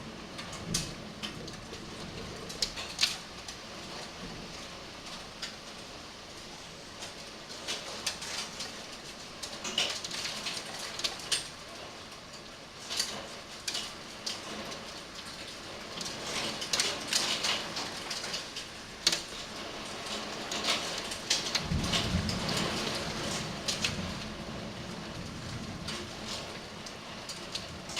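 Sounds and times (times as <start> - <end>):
hailstones striking hard surfaces: 12.8 - 27.9.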